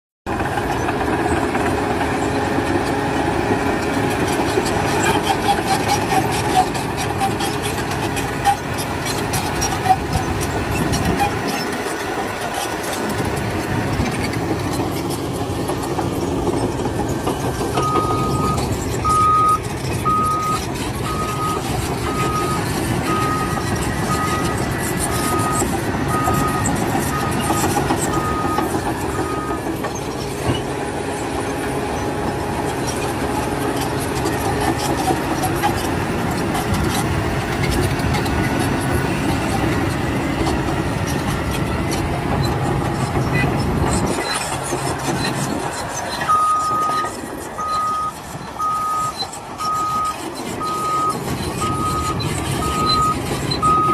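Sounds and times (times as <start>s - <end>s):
heavy machine engine running: 0.3s - 53.9s.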